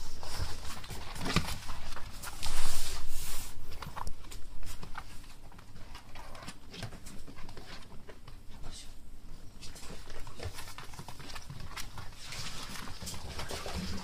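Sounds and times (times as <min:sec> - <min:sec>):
puppies scuffling: 0:00.0 - 0:14.0
puppy claws pattering on floor: 0:00.0 - 0:14.0.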